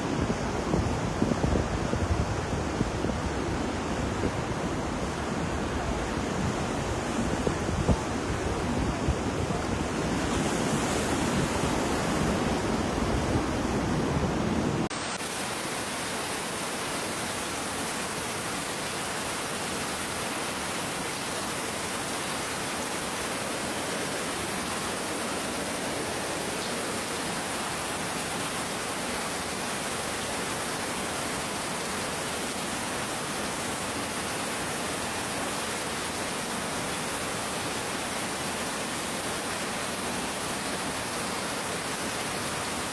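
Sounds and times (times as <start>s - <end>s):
ocean waves washing in: 0.0s - 42.9s
pouring rain hiss: 14.3s - 42.9s.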